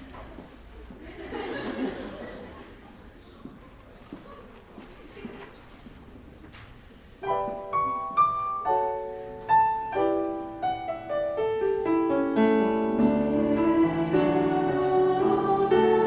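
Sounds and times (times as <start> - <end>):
low room murmur: 0.0 - 14.9
piano playing chords: 7.2 - 16.0.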